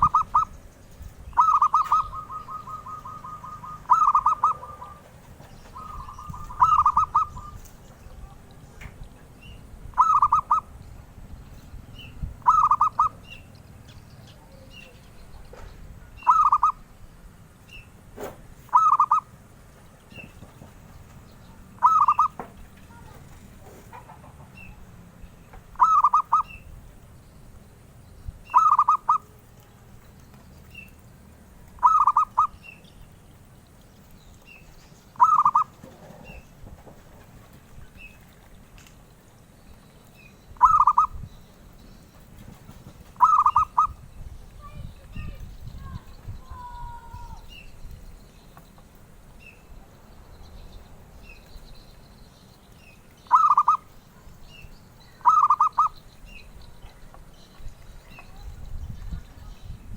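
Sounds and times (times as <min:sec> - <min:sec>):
dove cooing: 0:00.0 - 0:00.6, 0:01.3 - 0:07.8, 0:09.9 - 0:10.8, 0:12.4 - 0:13.2, 0:16.2 - 0:16.9, 0:18.7 - 0:19.3, 0:21.8 - 0:24.5, 0:25.7 - 0:26.6, 0:28.5 - 0:29.5, 0:31.8 - 0:32.6, 0:35.1 - 0:36.5, 0:40.6 - 0:41.2, 0:42.6 - 0:44.0, 0:53.3 - 0:53.9, 0:55.2 - 0:56.0.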